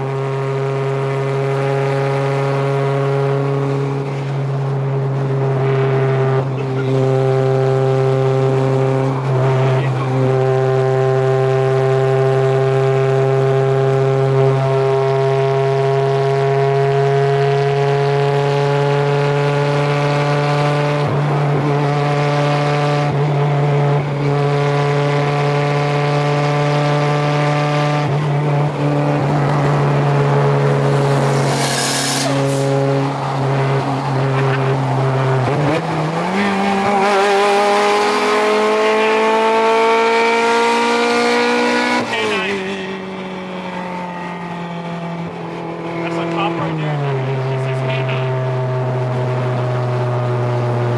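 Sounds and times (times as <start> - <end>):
car engine accelerating: 0.0 - 50.9.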